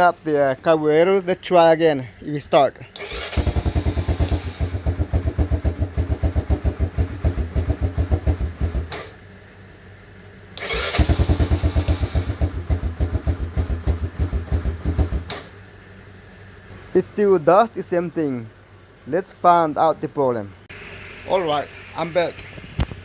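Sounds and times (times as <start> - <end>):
engine cranking on electric starter: 2.9 - 5.2, 10.6 - 12.8.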